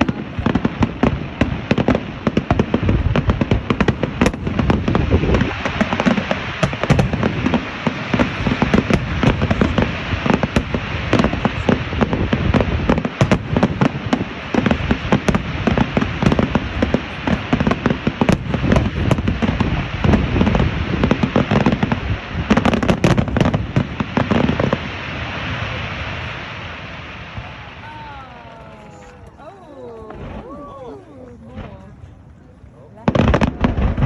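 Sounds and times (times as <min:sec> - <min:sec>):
firework shell bursts and crackle: 0:00.0 - 0:25.5.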